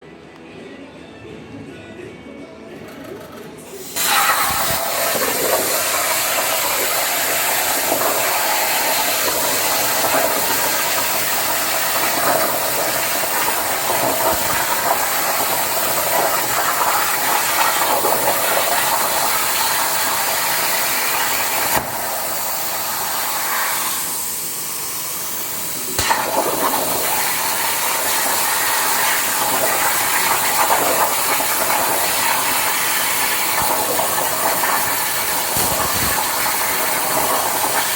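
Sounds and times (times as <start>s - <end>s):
plasma torch hissing: 3.6s - 37.9s.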